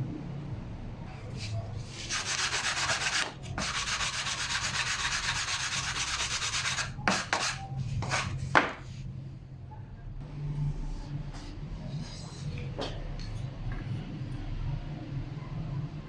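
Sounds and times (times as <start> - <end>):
sanding wood by hand: 1.4 - 8.5.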